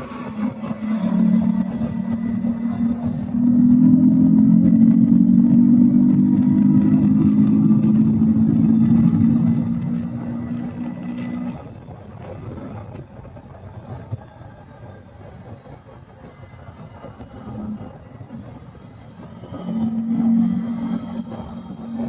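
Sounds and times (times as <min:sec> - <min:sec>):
motorcycle engine running: 0:00.0 - 0:11.6
road noise: 0:00.0 - 0:22.0.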